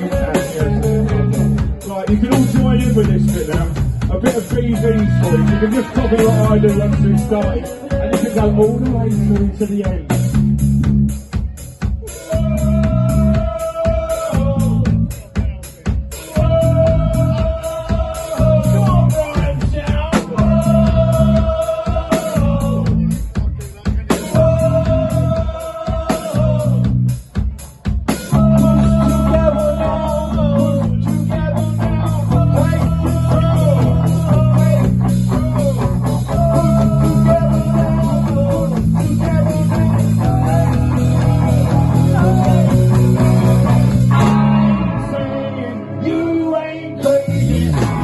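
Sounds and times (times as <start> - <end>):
drums with hi-hat beat: 0.0 - 44.8, 47.0 - 48.0
bass guitar: 0.0 - 48.0
electric guitar: 28.2 - 48.0.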